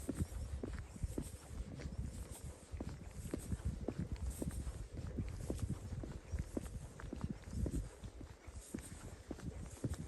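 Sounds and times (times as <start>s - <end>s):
footsteps on outdoor path: 0.0s - 10.0s.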